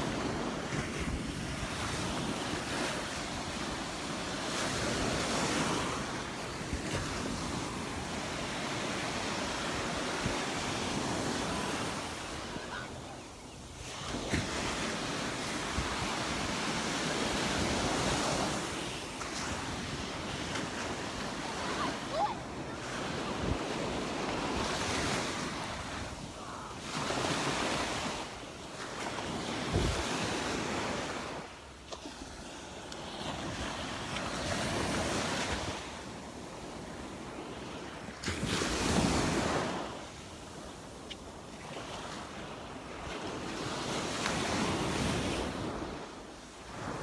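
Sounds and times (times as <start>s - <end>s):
surf breaking on beach: 0.0s - 13.2s, 13.8s - 31.5s, 38.0s - 40.2s.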